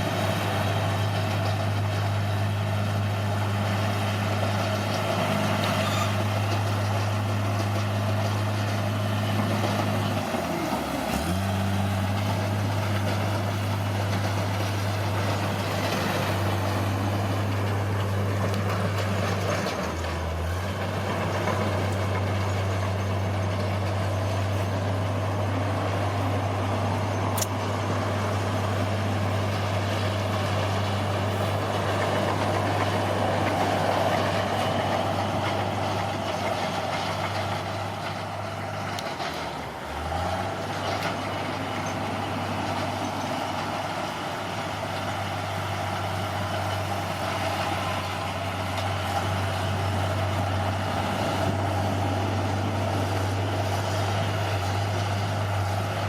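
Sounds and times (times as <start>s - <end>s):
heavy diesel engine running: 0.0s - 56.0s
sharp click: 27.3s - 27.6s.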